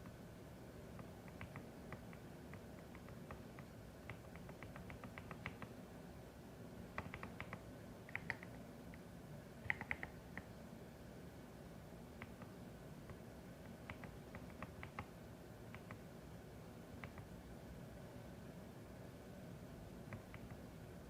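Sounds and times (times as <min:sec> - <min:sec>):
mechanical keyboard typing: 0:01.0 - 0:05.7, 0:06.9 - 0:08.6, 0:09.6 - 0:10.5, 0:13.7 - 0:15.1.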